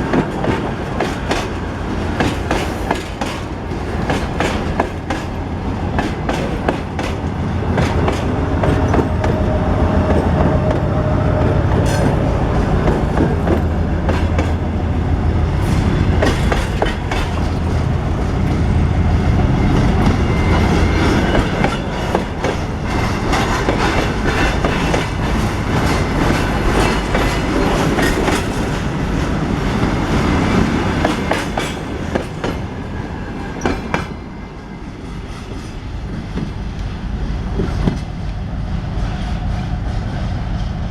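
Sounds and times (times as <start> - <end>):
train wheels clicking over joints: 0.0 - 10.8, 11.8 - 14.7, 15.5 - 18.6, 19.7 - 34.2
train low rumble: 0.0 - 40.9.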